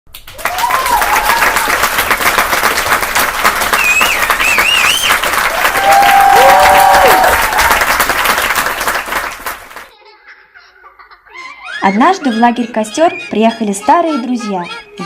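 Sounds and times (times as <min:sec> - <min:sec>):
audience applauding: 0:00.1 - 0:09.9.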